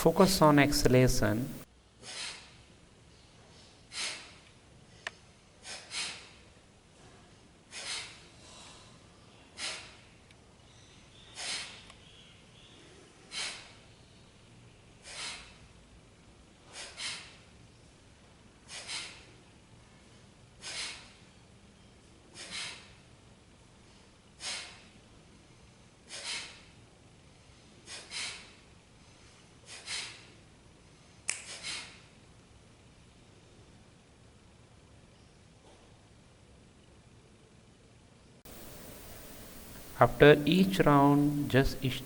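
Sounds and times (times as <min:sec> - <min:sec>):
forceful nasal exhalations: 0:38.5 - 0:42.0
quiet inhalations: 0:38.5 - 0:42.0.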